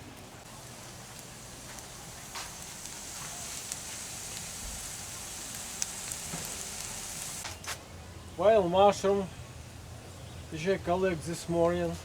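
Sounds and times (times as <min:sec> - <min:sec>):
mushrooms sizzling in a skillet: 0:00.2 - 0:07.5
pops and crackles: 0:00.4 - 0:07.7.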